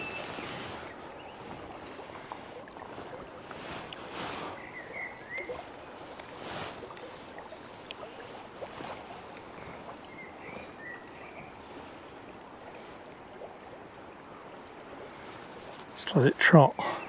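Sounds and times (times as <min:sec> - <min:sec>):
river rushing: 0:00.0 - 0:17.0.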